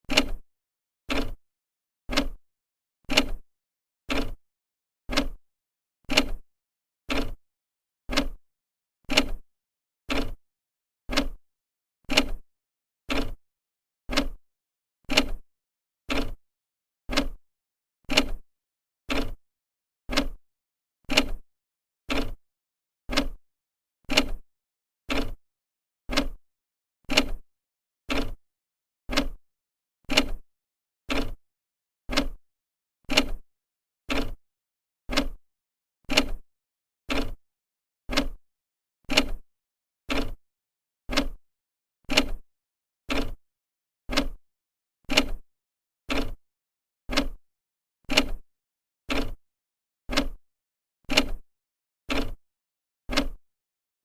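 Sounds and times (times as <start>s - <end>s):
clock ticking: 44.1s - 44.4s, 47.1s - 47.4s, 50.1s - 50.4s, 53.1s - 53.4s.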